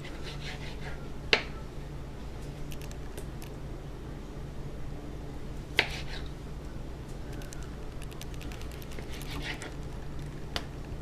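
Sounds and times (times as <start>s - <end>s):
knife chopping on cutting board: 5.8s - 6.2s.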